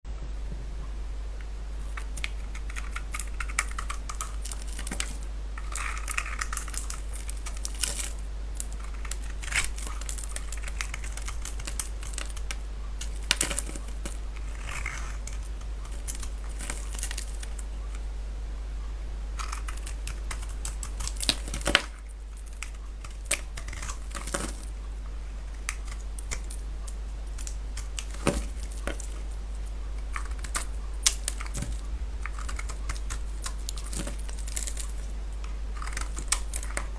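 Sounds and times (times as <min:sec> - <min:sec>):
steady low hum: 0:00.1 - 0:36.9
knife crunching into soap: 0:01.9 - 0:17.4, 0:19.4 - 0:24.7, 0:30.0 - 0:36.9.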